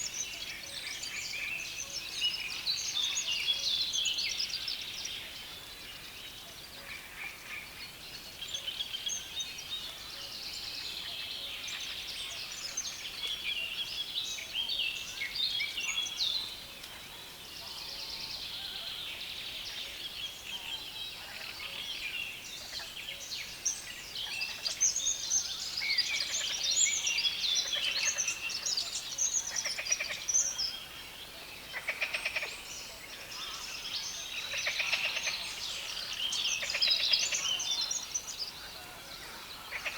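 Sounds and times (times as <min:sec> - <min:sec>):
chorus of birds singing: 0:00.0 - 0:39.9.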